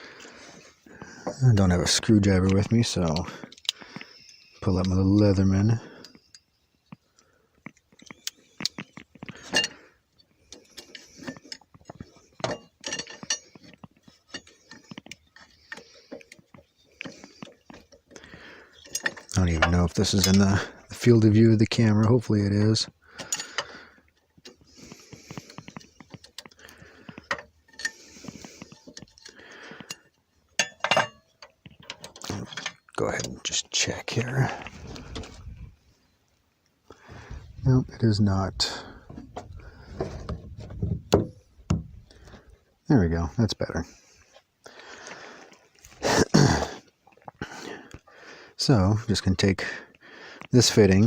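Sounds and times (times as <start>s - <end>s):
multi-tool metallic clicks: 2.4s - 5.0s.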